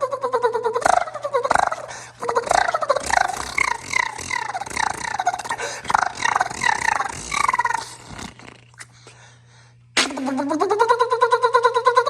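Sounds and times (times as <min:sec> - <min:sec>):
faint hum: 0:00.0 - 0:12.0
person imitating car engine cranking: 0:00.7 - 0:08.8.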